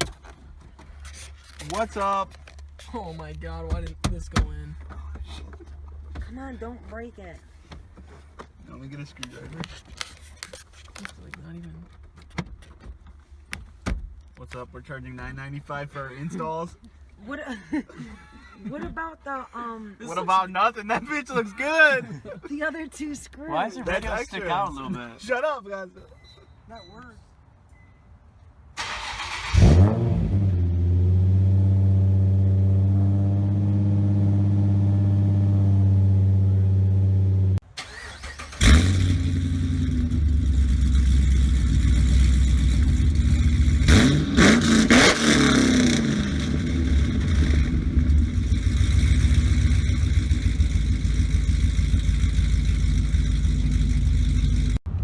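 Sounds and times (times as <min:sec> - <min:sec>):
engine revving: 0:28.8 - 0:54.8
car engine idling: 0:38.6 - 0:44.0, 0:46.0 - 0:54.9.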